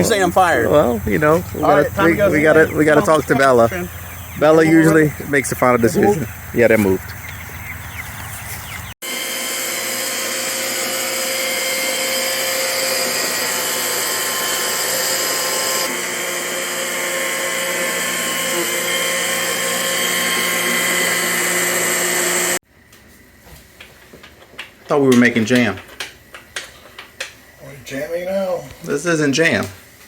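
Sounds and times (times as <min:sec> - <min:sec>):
kitchen appliance motor whirring: 0:09.0 - 0:22.6.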